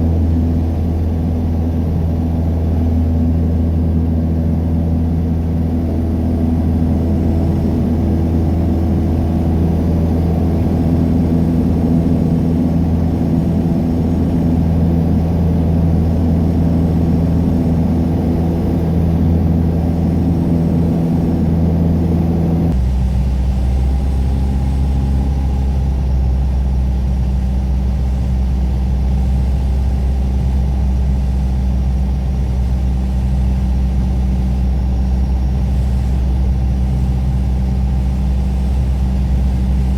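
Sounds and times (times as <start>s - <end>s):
small plane engine and propeller: 0.0s - 39.9s.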